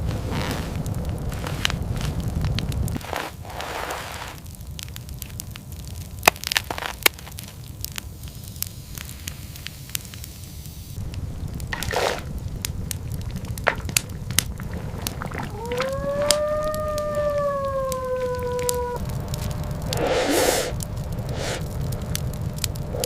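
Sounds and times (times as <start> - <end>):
low rumble: 0.0 - 3.0, 11.0 - 23.0
wood fire crackling: 0.0 - 23.0.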